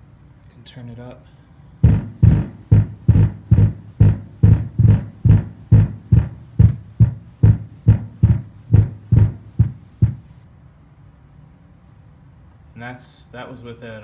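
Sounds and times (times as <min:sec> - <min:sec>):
faint hum: 0:01.0 - 0:10.4
subwoofer bass beat: 0:01.8 - 0:10.4.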